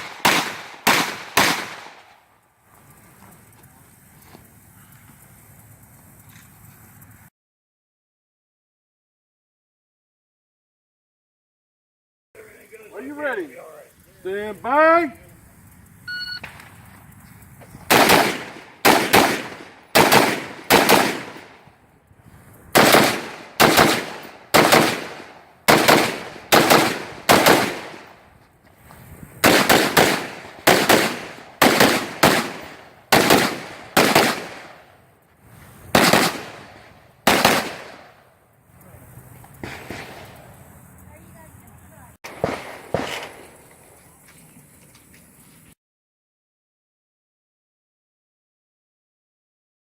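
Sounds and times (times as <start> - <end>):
rifle shots: 0.0 - 2.2, 17.9 - 21.7, 22.7 - 28.2, 29.4 - 35.0, 35.9 - 38.2, 39.6 - 40.6, 42.2 - 43.6.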